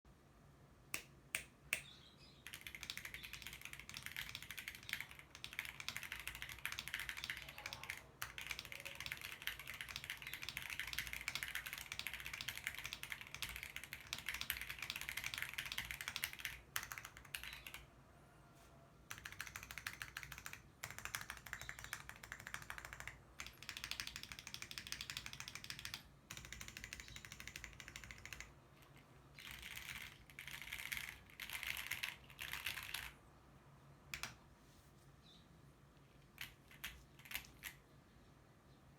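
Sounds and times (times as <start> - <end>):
mechanical keyboard typing: 2.4 - 17.8, 19.1 - 33.2, 34.1 - 34.4, 36.4 - 37.8.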